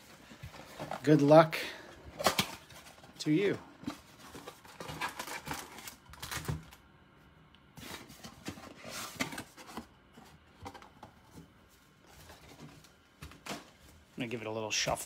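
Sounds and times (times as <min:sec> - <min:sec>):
foil packs crinkling: 0:00.0 - 0:06.8.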